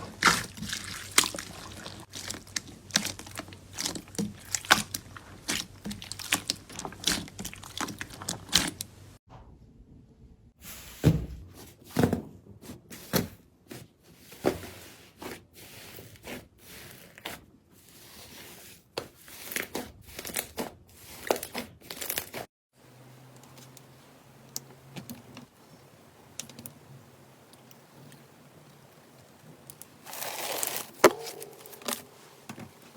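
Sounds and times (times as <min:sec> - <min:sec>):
slime crackling and popping: 0:00.2 - 0:08.9.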